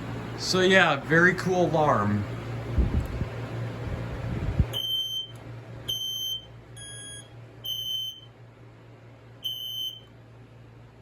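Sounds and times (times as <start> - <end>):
smoke alarm beeping: 4.8 - 8.4, 9.4 - 10.1.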